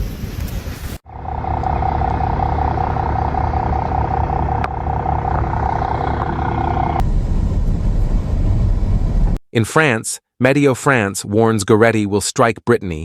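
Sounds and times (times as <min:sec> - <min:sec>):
heavy vehicle engine rumble: 0:01.0 - 0:09.4
high engine whine: 0:01.1 - 0:09.4.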